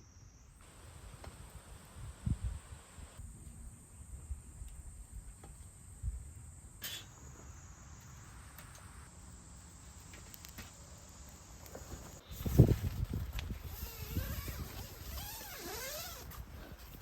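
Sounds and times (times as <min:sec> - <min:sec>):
wind rumble on microphone: 0:01.8 - 0:03.2, 0:12.2 - 0:15.5.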